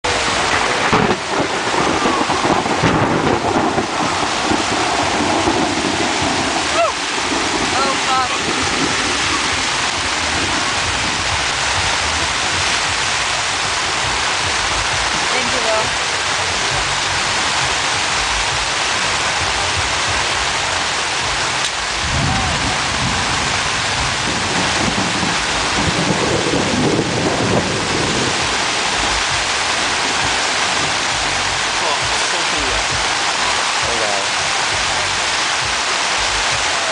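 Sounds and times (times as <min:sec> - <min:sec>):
heavy rain on a tent: 0:00.0 - 0:36.9
low rumble of thunder: 0:00.2 - 0:16.0, 0:21.3 - 0:31.7.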